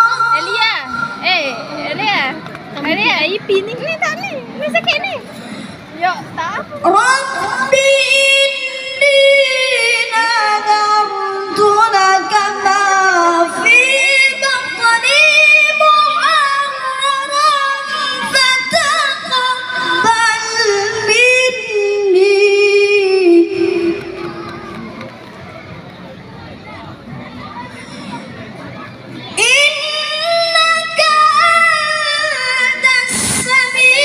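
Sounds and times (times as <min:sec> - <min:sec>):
child reciting melodically: 0:06.8 - 0:24.7, 0:29.3 - 0:34.0.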